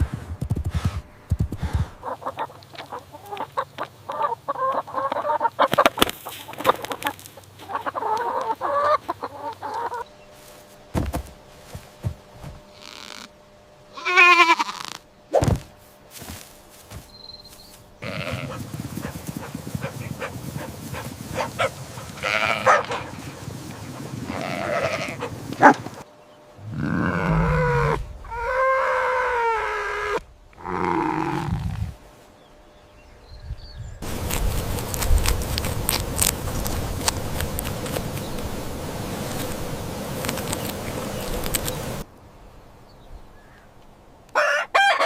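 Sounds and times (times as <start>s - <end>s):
farm animals calling: 1.9s - 10.6s, 13.9s - 15.0s, 16.7s - 32.0s
steady hiss: 10.2s - 30.6s, 34.0s - 44.3s.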